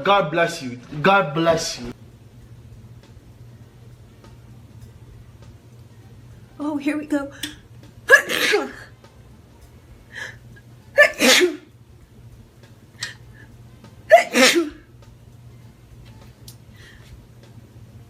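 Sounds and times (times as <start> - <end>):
woman sneezing: 8.1 - 8.9, 11.0 - 11.7, 14.1 - 14.8.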